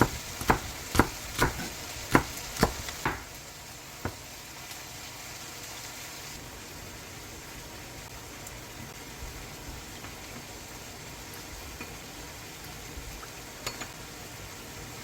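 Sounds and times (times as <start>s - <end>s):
utensil knocking against pan: 0.0s - 3.3s
food sizzling in a pan: 0.0s - 15.0s.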